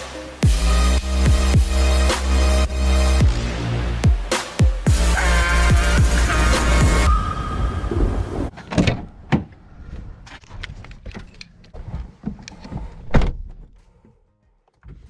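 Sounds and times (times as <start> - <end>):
electronic music: 0.0 - 8.3.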